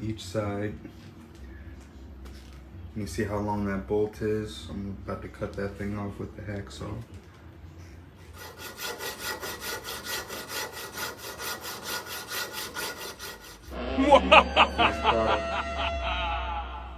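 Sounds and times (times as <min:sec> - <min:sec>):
hacksaw cutting through bolt: 0:08.3 - 0:13.7
low hum: 0:13.6 - 0:16.9
pitched wavering sound: 0:13.7 - 0:16.9.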